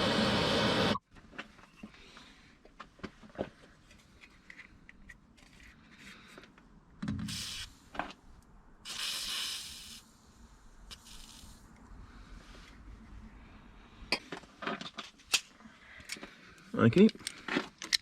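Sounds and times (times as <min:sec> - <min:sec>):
bursts of hiss: 0:07.3 - 0:07.9, 0:08.8 - 0:10.1, 0:10.9 - 0:11.7
metal tools clicking and knocking: 0:17.1 - 0:18.0.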